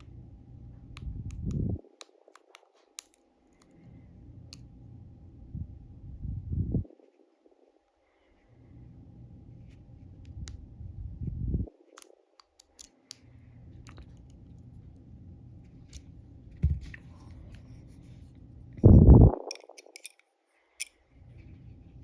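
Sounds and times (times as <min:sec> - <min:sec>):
lock pick metallic clicks: 0:01.0 - 0:03.8, 0:19.4 - 0:20.2.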